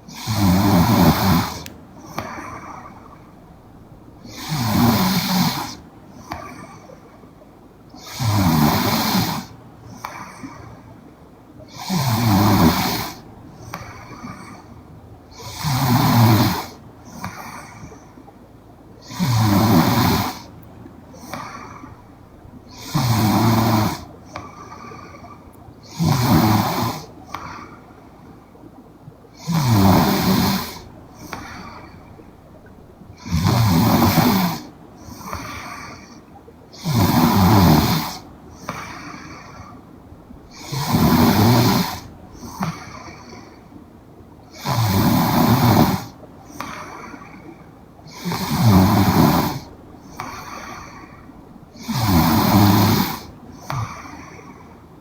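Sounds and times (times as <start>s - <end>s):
soft breathing: 0.0s - 55.0s
woman snoring: 0.1s - 2.9s, 4.3s - 5.8s, 8.0s - 9.6s, 11.7s - 14.6s, 15.3s - 17.6s, 19.1s - 20.5s, 22.7s - 24.1s, 25.8s - 27.1s, 29.4s - 32.0s, 33.2s - 35.6s, 36.8s - 39.5s, 40.5s - 42.8s, 44.5s - 46.7s, 48.1s - 51.2s, 51.8s - 54.5s.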